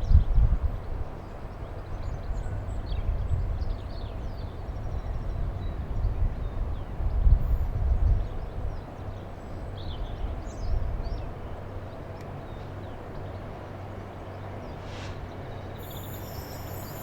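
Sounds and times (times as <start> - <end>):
wind buffeting microphone: 0.0 - 11.8
small birds chirping: 14.2 - 17.0.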